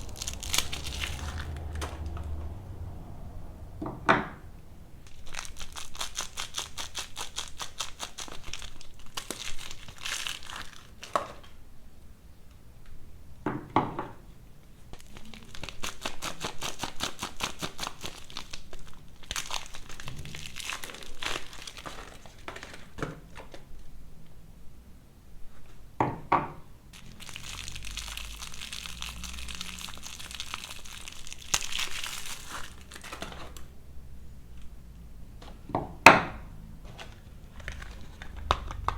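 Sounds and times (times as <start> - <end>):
soap packaging crinkling and tearing: 0.0 - 2.4, 5.0 - 11.6, 14.9 - 23.9, 26.9 - 33.8, 36.8 - 38.9.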